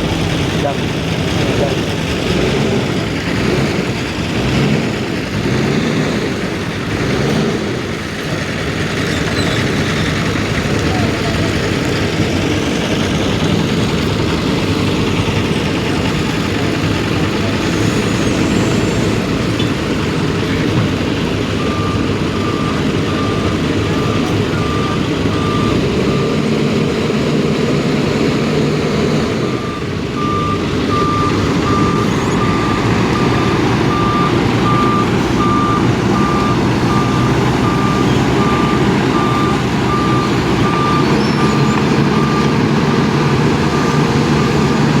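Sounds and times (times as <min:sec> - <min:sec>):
diesel paving machinery running: 0:00.0 - 0:45.0
reversing alarm beeping: 0:09.2 - 0:26.8, 0:29.2 - 0:45.0.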